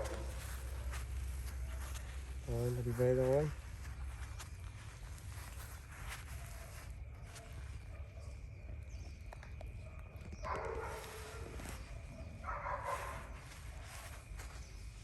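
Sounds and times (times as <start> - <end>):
dog barking: 0.0 - 1.0, 6.3 - 8.8, 9.8 - 14.1.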